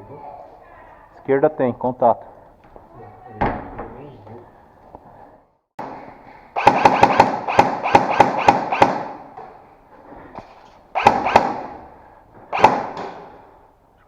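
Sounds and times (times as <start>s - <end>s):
airsoft guns firing: 5.8s - 9.4s, 10.9s - 11.9s, 12.5s - 13.4s.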